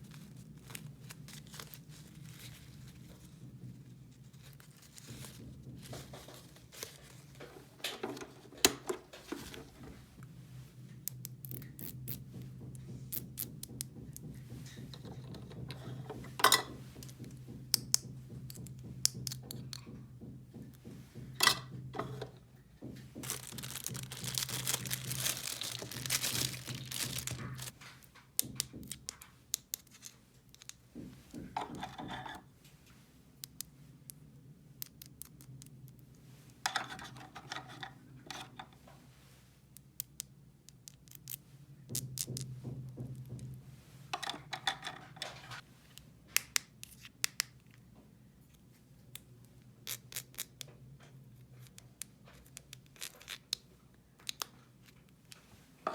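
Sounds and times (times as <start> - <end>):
packaging crinkling and tearing: 23.2 - 27.7.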